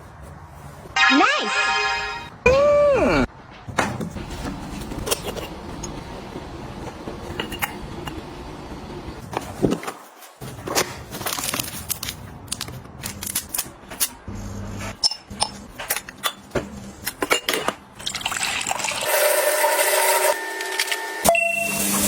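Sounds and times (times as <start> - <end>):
liquid pouring into container: 18.0 - 19.4.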